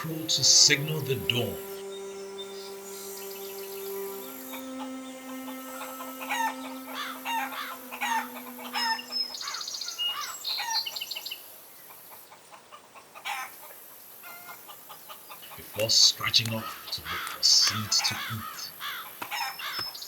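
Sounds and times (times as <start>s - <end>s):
low held tone: 0.0s - 10.2s
small birds chirping: 14.9s - 20.0s.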